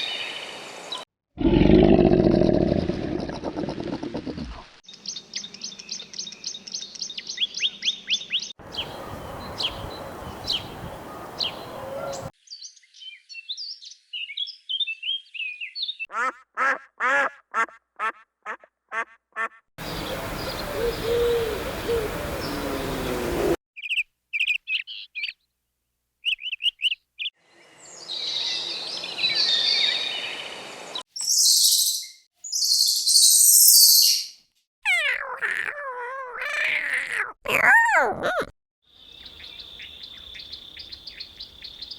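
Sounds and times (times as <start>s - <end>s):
birds chirping and trilling: 4.4s - 16.1s, 19.8s - 25.4s, 31.2s - 38.4s, 39.0s - 41.9s
repeated bird calls: 19.8s - 25.4s.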